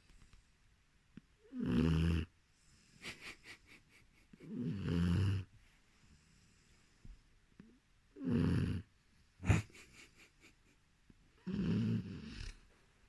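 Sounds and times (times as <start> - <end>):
puppy snoring: 1.4 - 2.3, 4.4 - 5.5, 8.1 - 9.7, 11.4 - 12.7.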